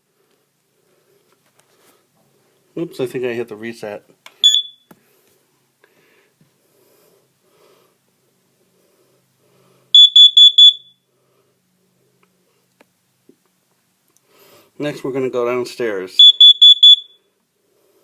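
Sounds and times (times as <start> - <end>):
high-pitched alarm beeps: 4.4 - 4.9, 10.0 - 11.0, 16.2 - 17.3.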